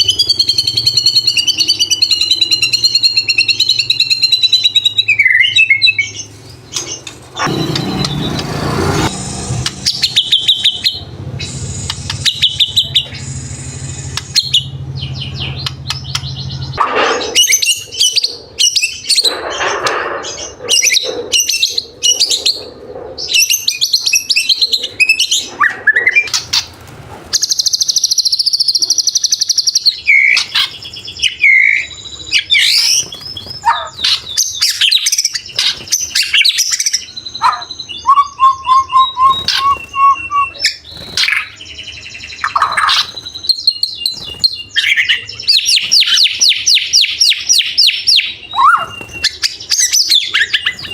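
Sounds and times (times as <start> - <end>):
songbird singing varied song: 27.4 - 50.9.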